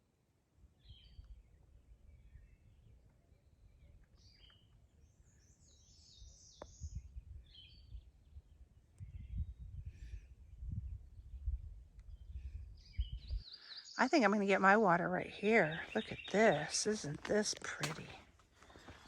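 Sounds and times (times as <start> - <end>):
faint bird chirps: 0.8 - 14.2.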